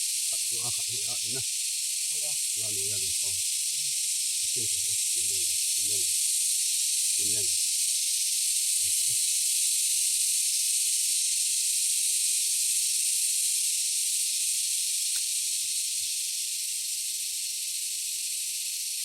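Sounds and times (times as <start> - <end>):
high-pitched hiss: 0.0 - 19.0.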